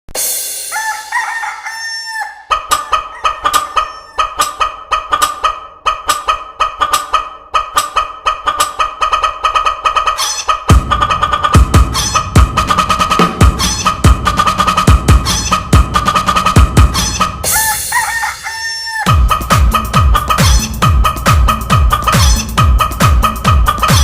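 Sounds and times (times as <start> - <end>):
chicken clucking rhythmically: 0.2 - 24.0
rooster crowing: 0.7 - 4.6, 17.5 - 19.2.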